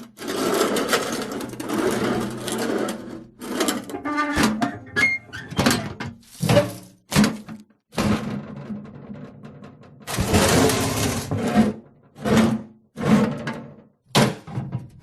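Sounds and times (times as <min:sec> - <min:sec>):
metal box scraping and squeaking: 0:00.2 - 0:07.0, 0:10.1 - 0:13.4
metal squeal: 0:04.0 - 0:05.8.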